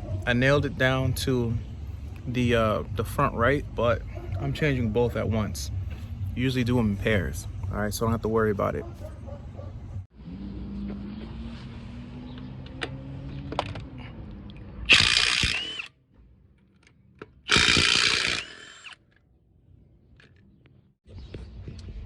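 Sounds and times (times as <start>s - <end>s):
impact wrench rattling: 17.5s - 19.0s.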